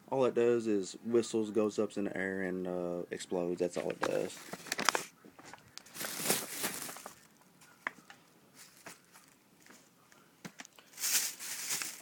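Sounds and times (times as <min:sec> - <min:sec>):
plastic bags rustling: 0:03.8 - 0:07.8, 0:08.6 - 0:09.4, 0:10.8 - 0:12.0.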